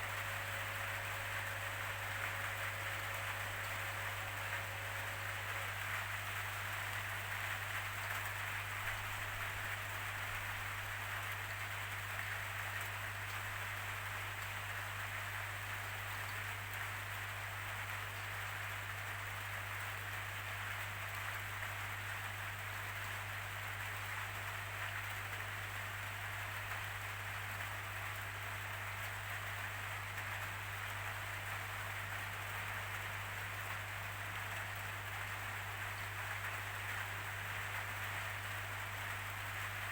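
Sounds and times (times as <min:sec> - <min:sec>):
low steady hum: 0:00.0 - 0:08.2
steady rain hiss: 0:00.0 - 0:39.9.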